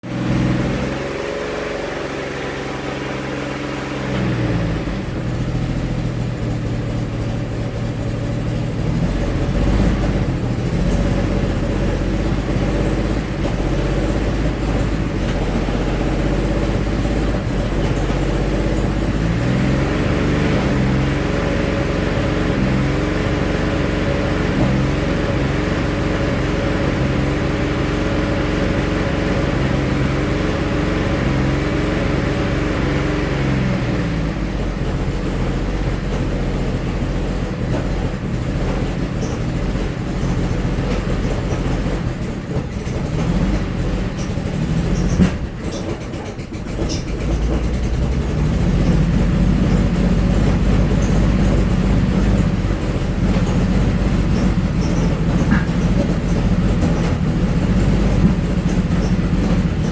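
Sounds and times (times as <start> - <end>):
engine running and misfiring: 0.0 - 59.9.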